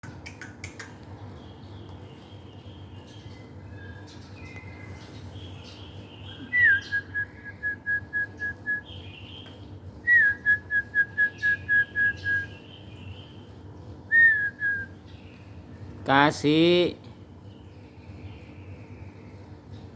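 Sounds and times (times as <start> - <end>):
person whistling bird call: 6.5 - 8.9, 10.1 - 12.5, 14.1 - 15.0.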